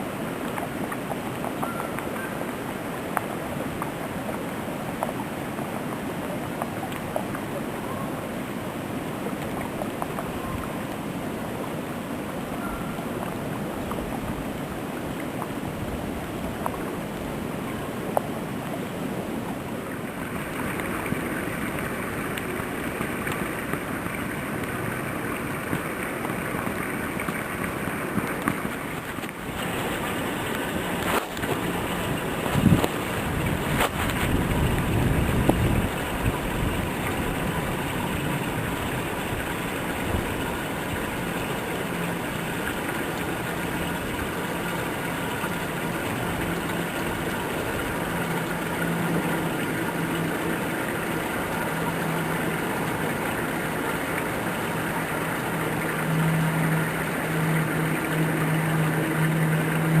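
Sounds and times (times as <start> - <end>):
strong storm wind buffeting microphone: 28.6 - 41.3.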